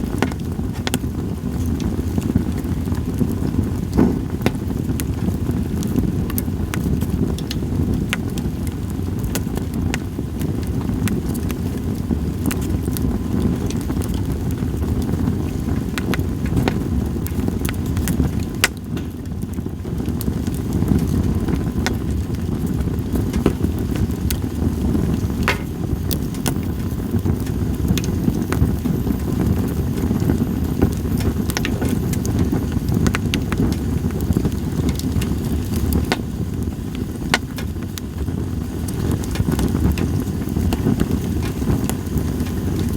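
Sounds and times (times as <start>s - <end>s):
campfire crackling and popping: 0.0s - 42.9s
low fire rumble: 0.0s - 42.9s.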